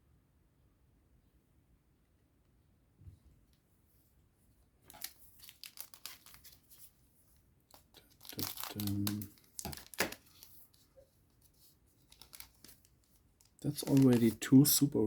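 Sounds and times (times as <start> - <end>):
plastic wrapper crinkling: 4.9 - 7.0, 7.7 - 14.5.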